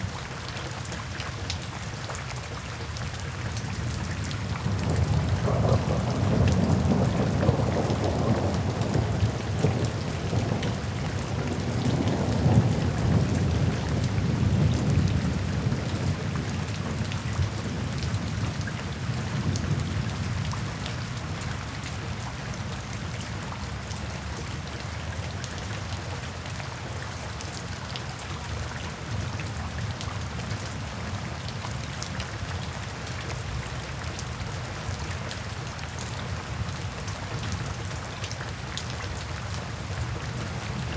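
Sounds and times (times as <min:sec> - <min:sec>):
rain drumming on a tin roof: 0:00.0 - 0:40.9
low roll of thunder: 0:04.4 - 0:20.8.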